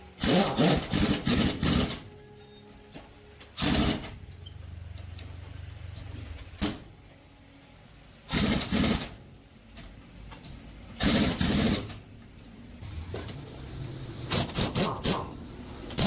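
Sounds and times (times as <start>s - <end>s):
short bursts of mechanical noise: 14.2s - 16.0s.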